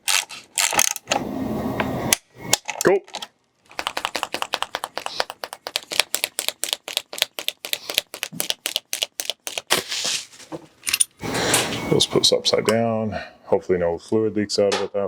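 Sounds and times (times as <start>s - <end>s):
ratchet clicking: 0.0s - 1.1s, 3.8s - 9.7s.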